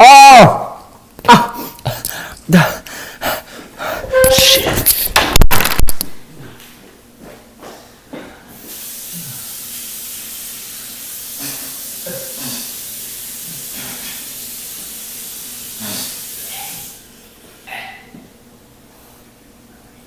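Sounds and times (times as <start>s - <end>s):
steady hiss: 8.5s - 17.2s.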